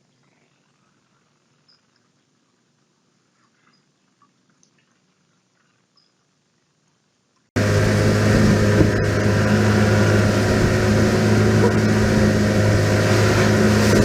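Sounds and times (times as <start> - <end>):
vehicle engine running: 7.6 - 14.0.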